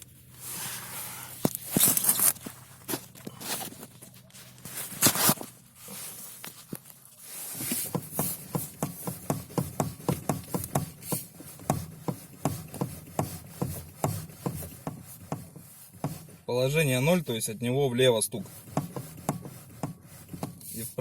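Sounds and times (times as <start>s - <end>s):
steering rack knocking: 7.7s - 16.5s, 18.5s - 20.7s.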